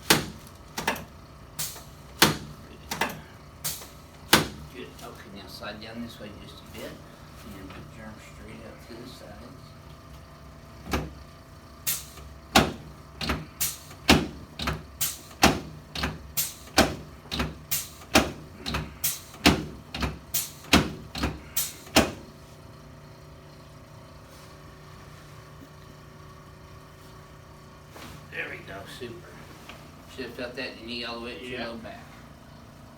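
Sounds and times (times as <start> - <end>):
sharp clicks and knocks: 0.0 - 4.7, 11.9 - 22.3.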